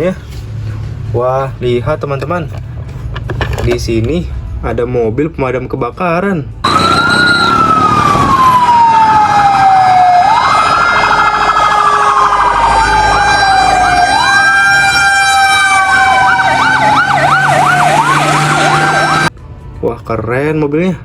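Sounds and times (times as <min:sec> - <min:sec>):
fast yelping siren: 0:06.6 - 0:19.3
wailing fire engine siren: 0:06.6 - 0:19.3.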